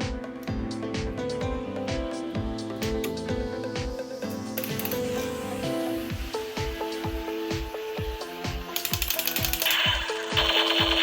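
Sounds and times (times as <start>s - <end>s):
background music with drum beat: 0.0s - 11.0s
harsh noise with fast clicking: 4.6s - 5.4s, 7.5s - 11.0s.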